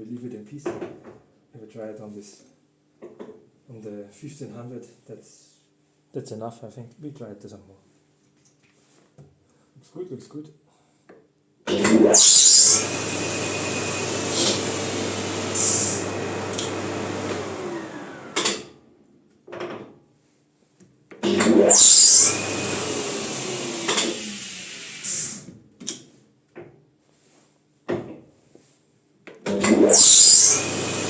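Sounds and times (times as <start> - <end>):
lathe spinning hum: 11.7 - 18.6, 21.4 - 25.4, 29.8 - 31.0
loud hissing burst: 15.5 - 16.6, 24.2 - 25.4.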